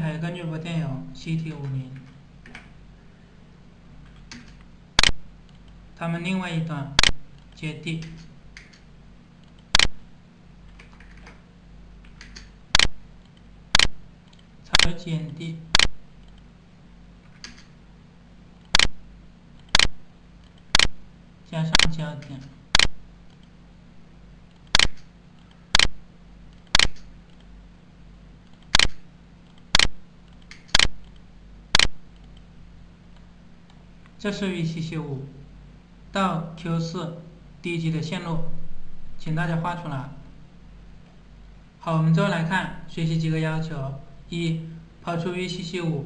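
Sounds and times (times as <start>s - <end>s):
faint low steady hum: 0.0s - 46.0s
computer input clicks: 4.0s - 5.8s, 7.0s - 10.0s, 10.7s - 11.4s, 12.0s - 15.0s, 15.7s - 16.5s, 17.3s - 17.8s, 18.7s - 19.0s, 19.6s - 21.0s, 21.7s - 23.5s, 24.5s - 26.0s, 26.6s - 27.5s, 28.5s - 32.5s.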